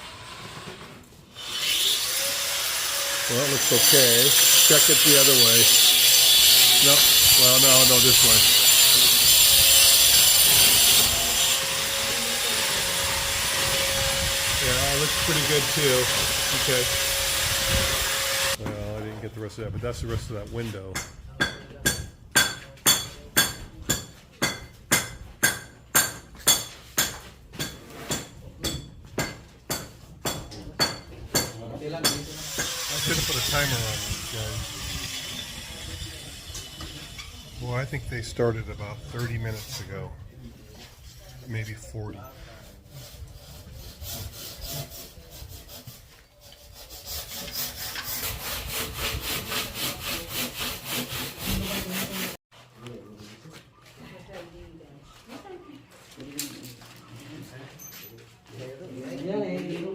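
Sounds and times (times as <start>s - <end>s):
hand saw cutting panel: 0.0s - 18.6s, 29.2s - 37.4s, 42.6s - 52.4s.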